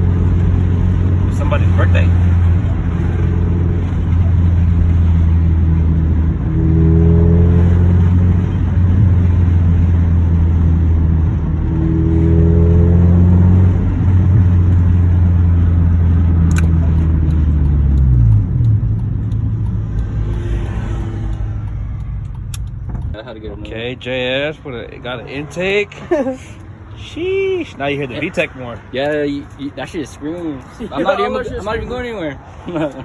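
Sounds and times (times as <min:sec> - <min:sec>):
car engine droning inside cabin: 0:00.0 - 0:26.4.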